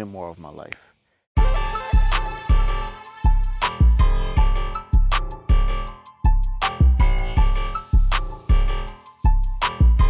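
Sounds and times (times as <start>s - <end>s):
sustained instrumental chords: 1.4s - 5.5s
deep kick drum: 1.4s - 10.0s
snare or clap hits: 2.1s - 2.5s, 8.1s - 8.4s.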